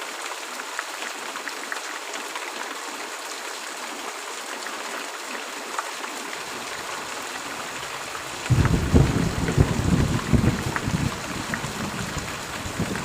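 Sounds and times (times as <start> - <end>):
steady rain hiss: 0.0 - 13.0
raindrops ticking: 7.3 - 13.0.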